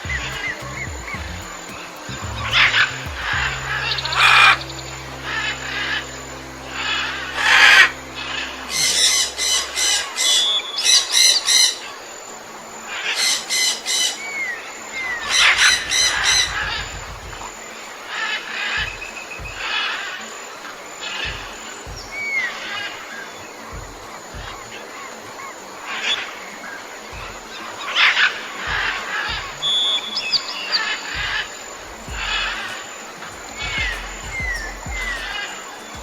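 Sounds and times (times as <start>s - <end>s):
low steady hum: 0.0s - 13.0s
birds squawking: 21.0s - 36.0s.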